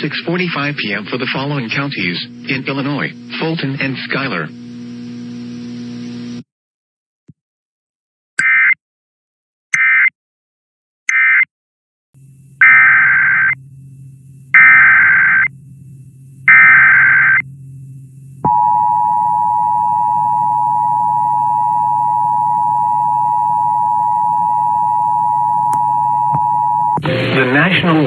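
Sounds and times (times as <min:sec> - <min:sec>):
faint hum: 0:00.0 - 0:06.4, 0:12.2 - 0:28.0
long steady attention tone: 0:00.1 - 0:06.2, 0:12.2 - 0:28.0
warbling data bursts: 0:12.6 - 0:13.6, 0:14.6 - 0:15.5, 0:16.5 - 0:17.4.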